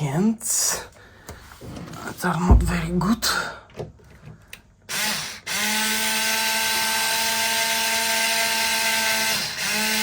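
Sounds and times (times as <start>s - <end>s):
power drill whine: 4.9s - 10.0s.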